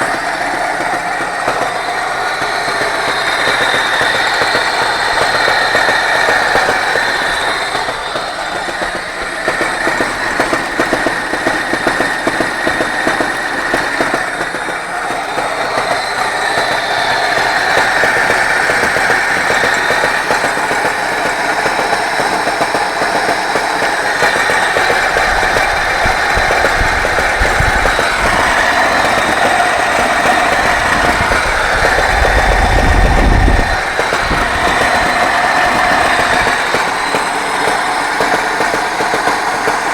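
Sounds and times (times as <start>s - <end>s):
petrol engine running with knock: 0.0s - 39.9s.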